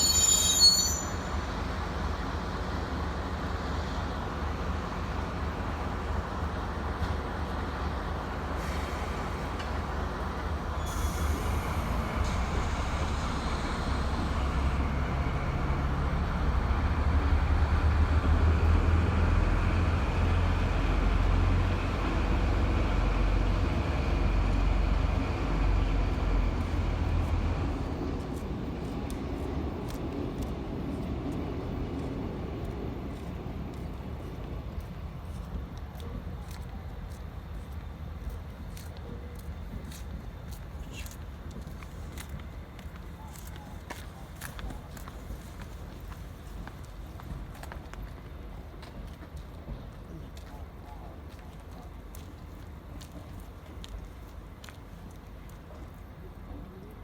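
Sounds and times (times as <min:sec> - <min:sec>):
train wheel squeal: 0:00.0 - 0:02.0, 0:10.4 - 0:15.8
diesel locomotive rumble: 0:00.0 - 0:57.0.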